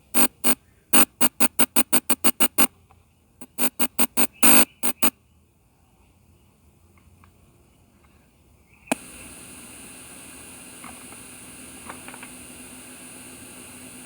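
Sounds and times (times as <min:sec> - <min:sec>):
rapid electronic keyboard notes: 0:00.0 - 0:02.7, 0:03.4 - 0:05.1.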